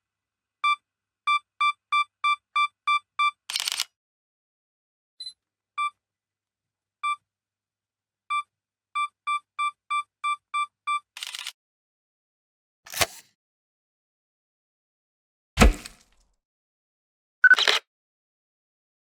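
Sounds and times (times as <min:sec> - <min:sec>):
camera shutter click: 0:03.5 - 0:03.9, 0:11.2 - 0:11.5.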